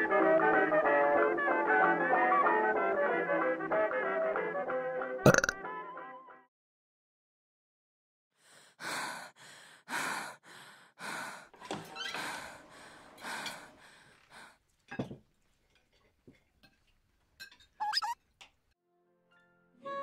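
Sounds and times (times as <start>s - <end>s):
heavy panting: 8.4s - 11.5s, 12.2s - 14.6s.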